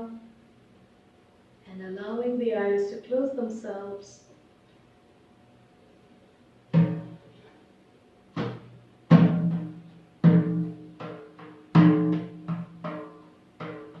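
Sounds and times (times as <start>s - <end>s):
deep drum beats: 6.7s - 7.2s, 8.4s - 14.0s.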